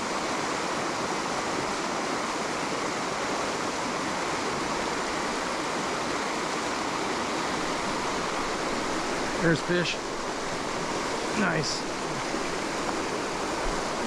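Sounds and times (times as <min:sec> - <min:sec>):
river water rushing: 0:00.0 - 0:14.0.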